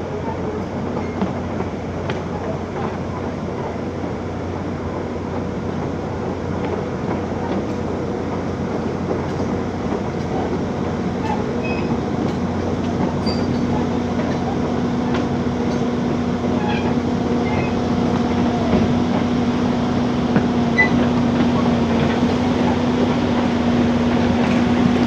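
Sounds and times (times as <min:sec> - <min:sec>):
backhoe diesel engine running: 0:00.0 - 0:25.0
light squeaks and clicks: 0:11.2 - 0:12.0, 0:13.2 - 0:14.4, 0:16.5 - 0:17.8, 0:20.8 - 0:21.1.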